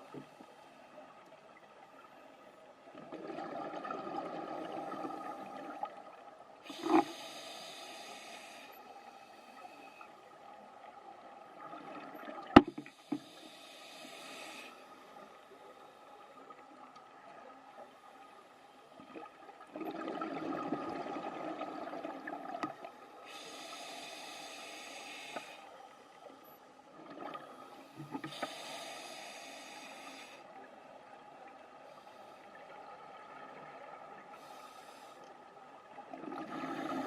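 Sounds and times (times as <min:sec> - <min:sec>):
scuba regulator hissing inhalations: 0:06.7 - 0:10.1, 0:12.8 - 0:15.5, 0:23.0 - 0:25.8, 0:27.7 - 0:30.5, 0:34.4 - 0:35.3
rush of exhaled bubbles: 0:19.1 - 0:22.6.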